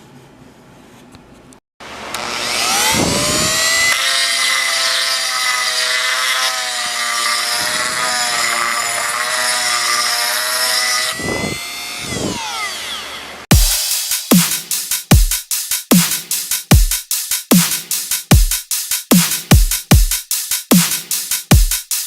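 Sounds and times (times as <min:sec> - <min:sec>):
power tool motor running: 0:01.8 - 0:13.6.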